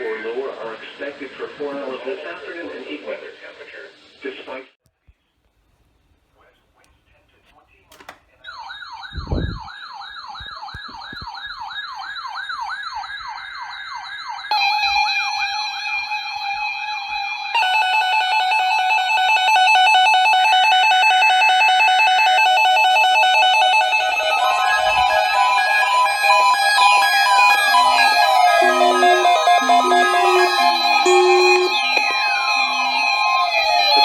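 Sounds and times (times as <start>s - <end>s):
rapid warbling siren: 8.5s - 15.9s, 17.7s - 34.0s
radio beeping alarms: 17.6s - 34.0s
steady tone and pulsing beeps: 24.0s - 34.0s.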